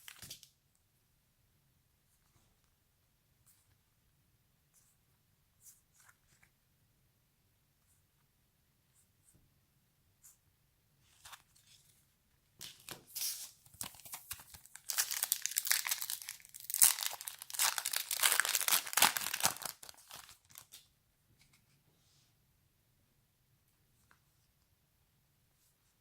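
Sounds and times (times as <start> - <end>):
wrapper tearing and crinkling: 13.8 - 20.8.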